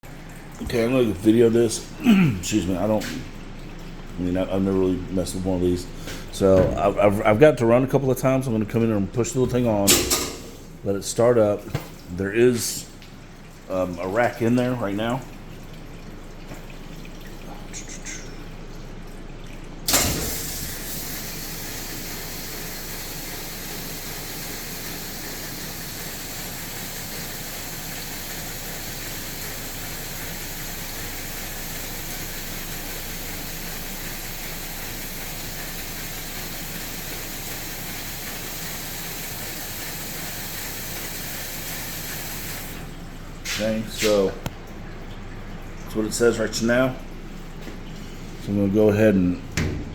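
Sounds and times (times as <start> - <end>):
low machine hum: 0.0 - 49.9
dishwasher clunk: 6.4 - 7.0, 9.8 - 10.7, 19.9 - 20.8, 49.5 - 49.9
rushing hiss of water: 19.9 - 42.8.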